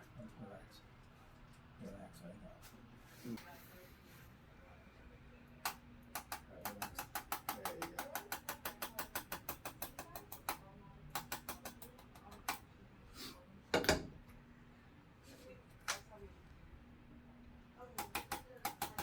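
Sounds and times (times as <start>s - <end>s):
adjusting tool rapid clicking taps: 5.6s - 12.6s, 18.0s - 19.0s.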